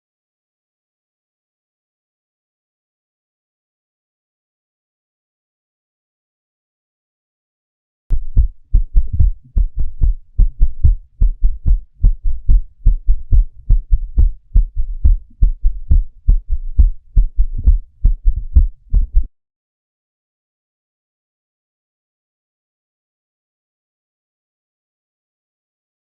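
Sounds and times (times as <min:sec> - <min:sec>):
heartbeat with gallop: 0:08.1 - 0:19.3.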